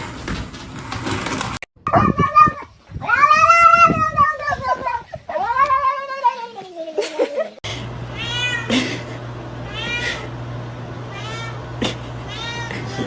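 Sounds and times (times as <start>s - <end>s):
steady low hum: 7.7s - 13.0s
cat meowing: 8.1s - 8.7s, 9.7s - 10.3s, 11.1s - 12.9s.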